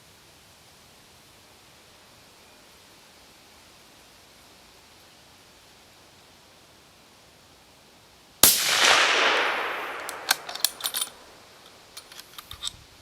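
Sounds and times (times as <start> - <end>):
suppressed rifle shot with echo: 8.4 - 11.8
short sharp clicks: 9.4 - 11.3.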